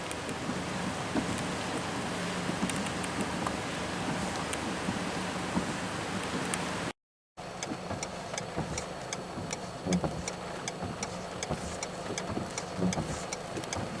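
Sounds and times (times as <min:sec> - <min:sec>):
regular ticking: 0:07.4 - 0:14.0
soft low thumps: 0:07.6 - 0:14.0.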